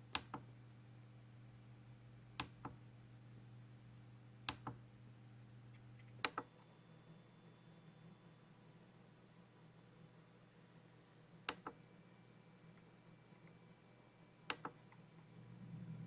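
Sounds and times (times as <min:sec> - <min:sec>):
faint electrical hum: 0:00.0 - 0:16.0
faint high whine: 0:06.5 - 0:16.0.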